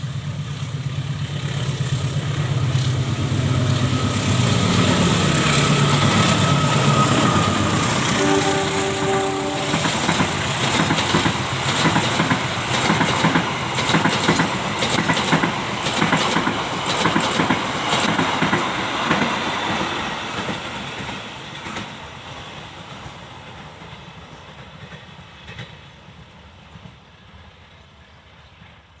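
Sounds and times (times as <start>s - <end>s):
train wheels clattering: 0.5s - 27.0s
horn-like held tone: 6.3s - 10.1s.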